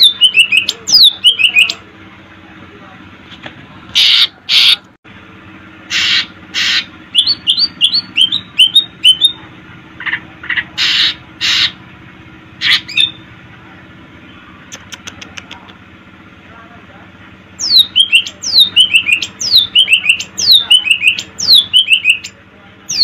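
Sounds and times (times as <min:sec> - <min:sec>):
bird singing harsh notes and chirps: 0:00.0 - 0:01.8, 0:05.9 - 0:09.4, 0:12.6 - 0:13.3, 0:17.6 - 0:23.0.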